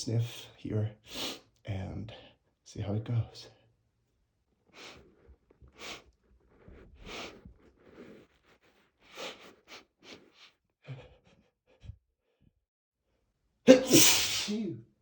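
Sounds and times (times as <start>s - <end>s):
man gasping and sniffing: 4.7s - 12.0s.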